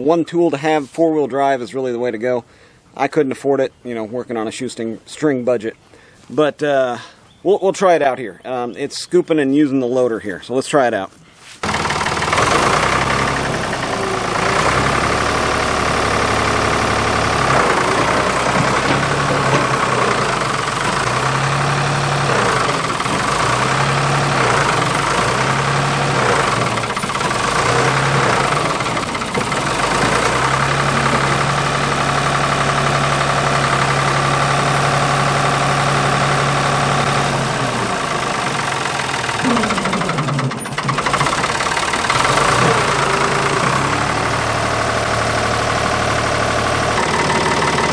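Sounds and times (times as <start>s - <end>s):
loader scooping dirt: 11.4s - 47.9s
diesel engine running under load: 11.6s - 47.9s.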